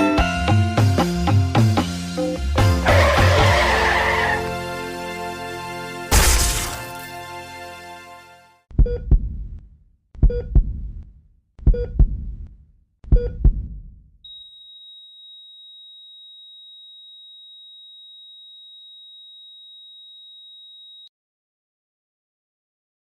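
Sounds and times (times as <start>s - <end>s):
heartbeat double thumps: 8.7s - 14.1s.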